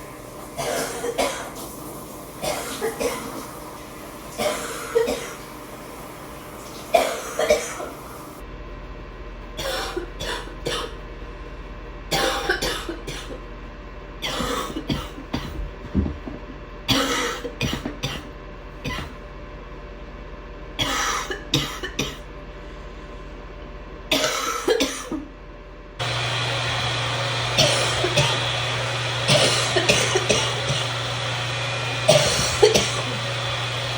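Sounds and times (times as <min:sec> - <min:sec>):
steady hum and hiss: 0:00.0 - 0:33.9
person coughing: 0:00.6 - 0:01.6, 0:02.4 - 0:03.4, 0:04.4 - 0:05.4, 0:07.0 - 0:07.9, 0:09.6 - 0:11.0, 0:12.1 - 0:13.4, 0:14.2 - 0:16.1, 0:16.9 - 0:19.2, 0:20.8 - 0:22.2, 0:24.1 - 0:25.3, 0:27.6 - 0:28.4, 0:29.3 - 0:30.9, 0:32.1 - 0:33.3.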